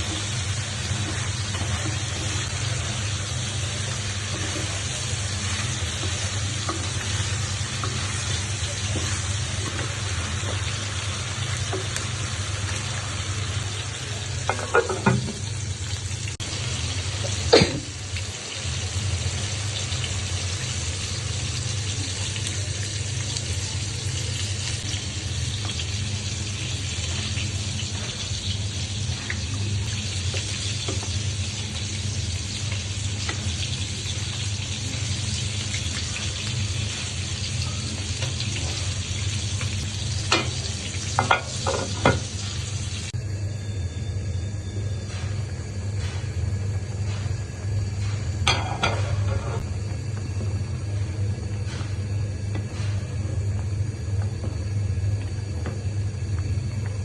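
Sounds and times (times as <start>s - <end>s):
food sizzling in a pan: 0.0s - 43.2s.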